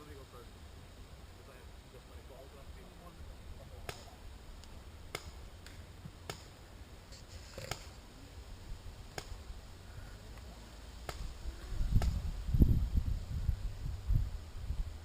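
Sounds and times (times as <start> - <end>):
distant paintball marker pops: 3.8 - 6.6, 9.1 - 9.4, 10.4 - 11.3, 12.0 - 12.2.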